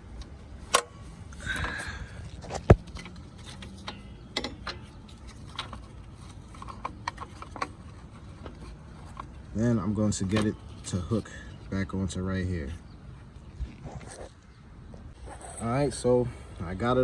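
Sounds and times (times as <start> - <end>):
plastic and metal clicks: 0.7 - 1.8.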